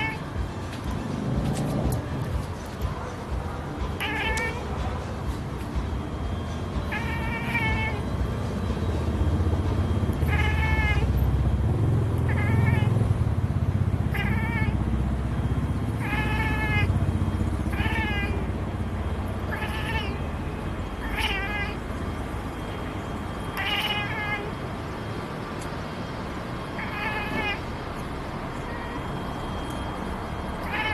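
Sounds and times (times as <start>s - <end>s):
cat chirping: 0.0s - 0.4s, 3.9s - 4.8s, 6.9s - 8.1s, 10.2s - 11.1s, 12.2s - 13.0s, 14.1s - 14.8s, 16.0s - 17.0s, 17.7s - 18.5s, 19.4s - 20.4s, 21.0s - 22.0s, 23.5s - 24.6s, 26.7s - 30.9s.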